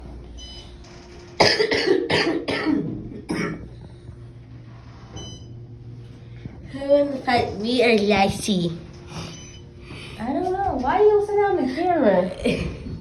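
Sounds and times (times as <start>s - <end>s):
person coughing: 1.4s - 3.8s.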